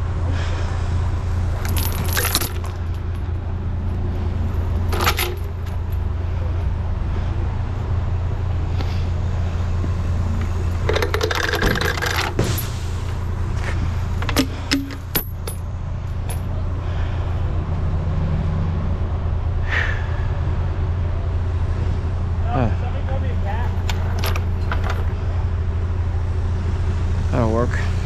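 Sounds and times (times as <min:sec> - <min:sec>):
engine idling: 0:00.0 - 0:28.0
metallic clinking and rattling: 0:01.6 - 0:03.4, 0:04.7 - 0:06.1, 0:10.7 - 0:13.3, 0:14.1 - 0:16.5, 0:23.8 - 0:25.1
sharp metal clanks: 0:10.8 - 0:13.2, 0:14.2 - 0:16.5.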